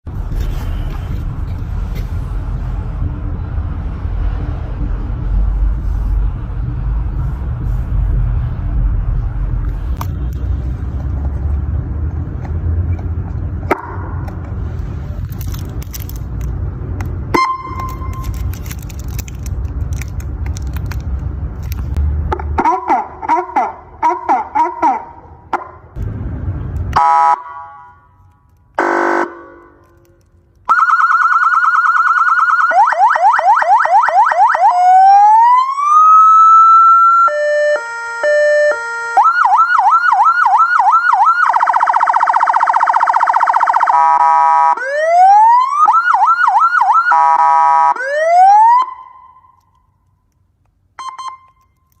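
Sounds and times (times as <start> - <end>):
police siren: 17.3 - 19.1, 22.4 - 25.7, 26.9 - 28.0, 30.6 - 49.8
horn blasts: 28.8 - 30.0.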